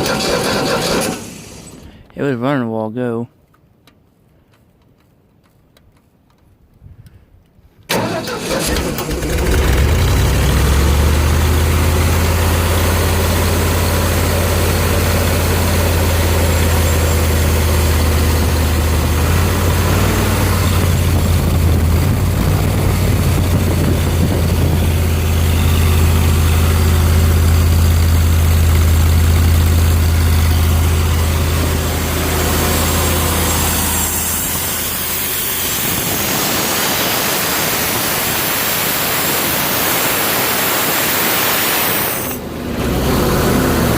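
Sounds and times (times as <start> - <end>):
compressor engine idling: 23.0 - 39.2.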